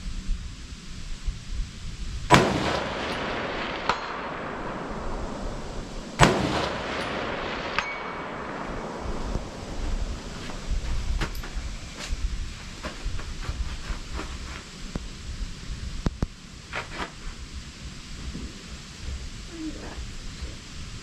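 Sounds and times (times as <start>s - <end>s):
rifle shots echoing: 2.3s - 11.9s
bullet ding on steel target: 7.8s - 8.2s.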